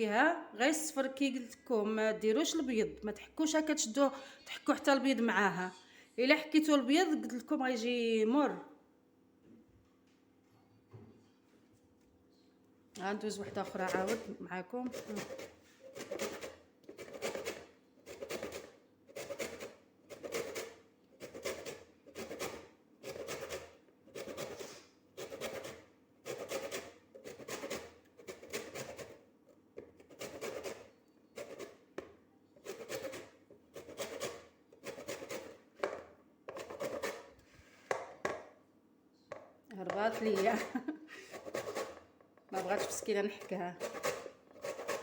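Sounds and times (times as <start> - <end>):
grater rasping on lemon rind: 13.6 - 31.8, 32.6 - 35.6, 36.5 - 37.3, 40.0 - 45.0.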